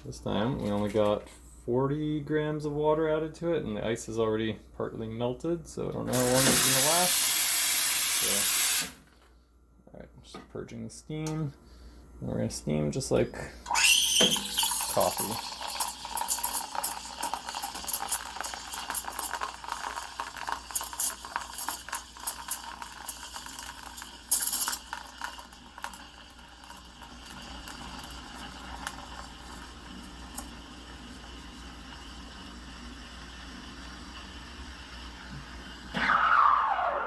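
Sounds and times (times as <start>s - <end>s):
steam wand bubbling and hissing: 6.1s - 8.9s, 13.7s - 37.0s.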